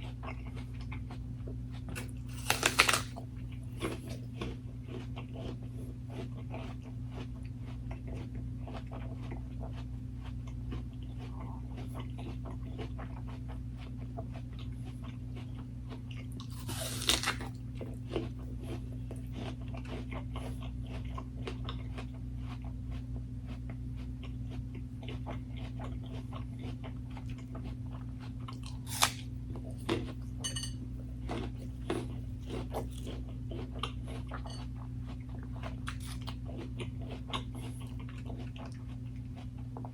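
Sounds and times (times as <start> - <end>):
crunching crisp food: 0.0 - 39.9
wet chewing clicks: 35.4 - 39.9.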